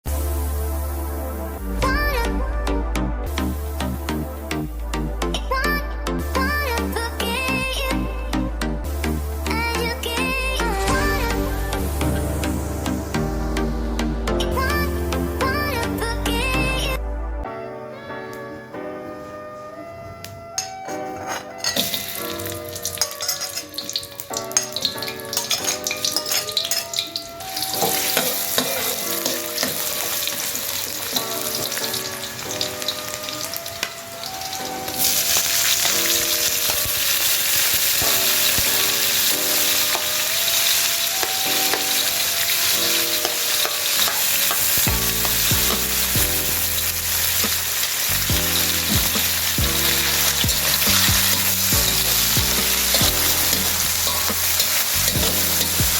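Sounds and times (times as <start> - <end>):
background music: 0.0 - 55.9
food sizzling in hot oil: 21.6 - 55.9.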